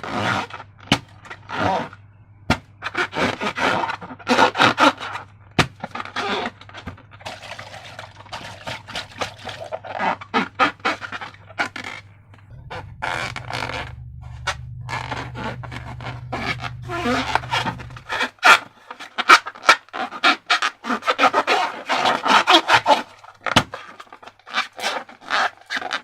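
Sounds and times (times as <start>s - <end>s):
wet slime squelching and crackling: 7.2s - 26.0s.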